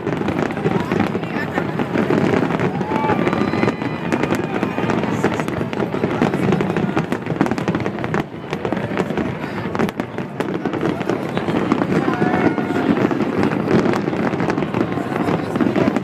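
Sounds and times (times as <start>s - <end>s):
fireworks bursting and crackling: 0.0s - 16.0s.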